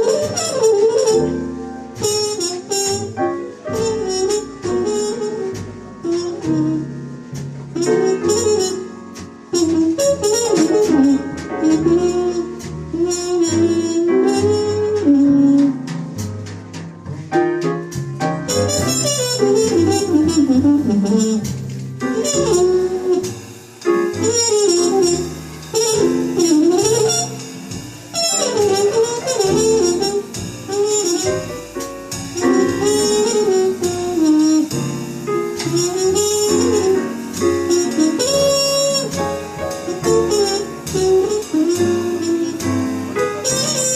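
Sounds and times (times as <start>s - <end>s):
horn melody: 0.0s - 15.9s, 17.2s - 43.9s
bass: 0.0s - 43.9s
drums: 0.0s - 43.9s
piano: 0.0s - 43.9s.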